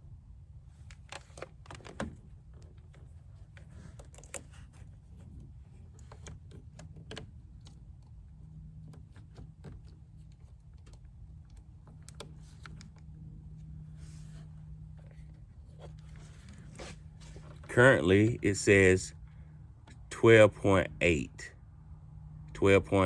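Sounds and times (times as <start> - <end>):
low steady hum: 0.0 - 23.0
light clicks and taps: 0.8 - 13.2.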